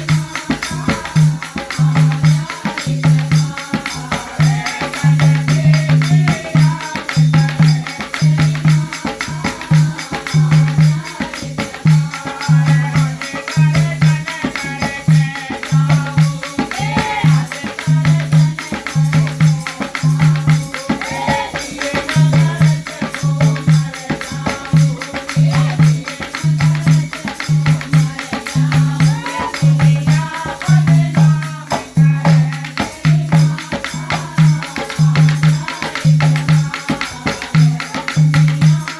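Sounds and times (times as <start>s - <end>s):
high percussion: 0.0s - 38.9s
deep drum beat: 11.7s - 38.9s.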